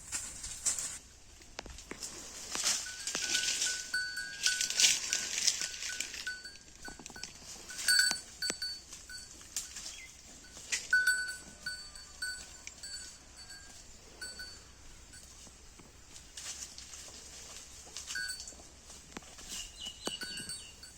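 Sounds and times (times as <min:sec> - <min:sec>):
grass being torn and chewed: 0:00.1 - 0:13.6
cow neck bell clinking: 0:02.5 - 0:15.8, 0:17.9 - 0:20.9.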